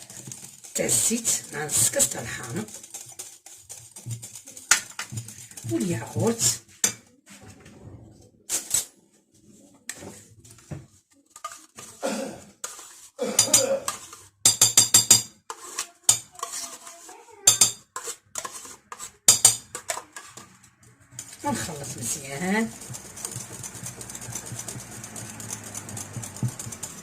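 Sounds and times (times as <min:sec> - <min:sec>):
spoon clinking against bowl: 0:13.4 - 0:15.3, 0:17.5 - 0:17.8, 0:19.3 - 0:20.6.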